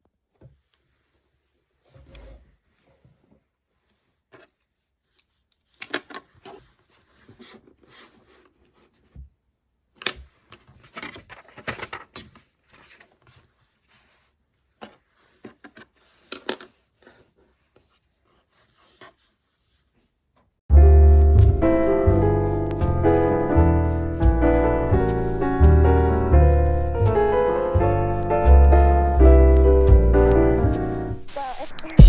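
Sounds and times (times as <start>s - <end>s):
paper rustling: 20.9s - 32.0s.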